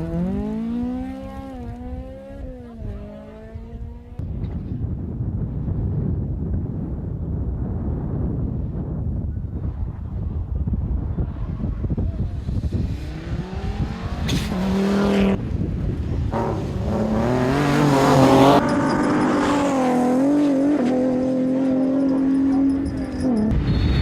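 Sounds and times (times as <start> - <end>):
rally car engines at high revs: 0.0 - 4.2, 11.0 - 23.7.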